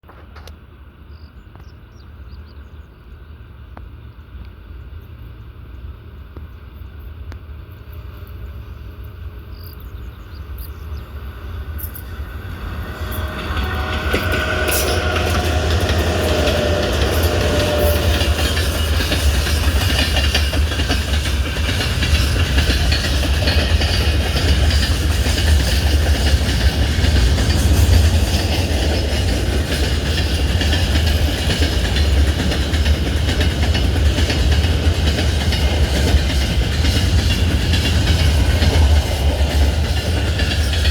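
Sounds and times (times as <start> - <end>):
train wheels clattering over rails: 10.5 - 40.9.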